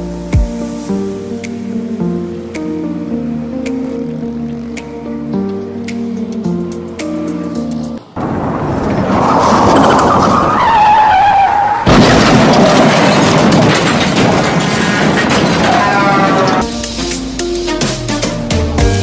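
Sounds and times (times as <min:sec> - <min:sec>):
background music: 0:00.0 - 0:08.1, 0:16.0 - 0:19.0
tyre and track noise: 0:05.5 - 0:19.0
go-kart engines revving: 0:08.0 - 0:19.0.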